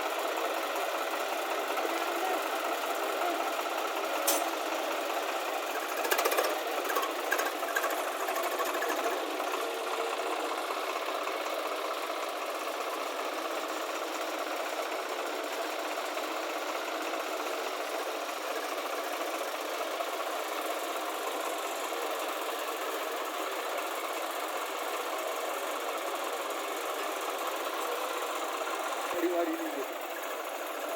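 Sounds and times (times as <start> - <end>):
diesel machinery running: 0.0 - 30.9
sharp metallic clanks: 4.2 - 4.6.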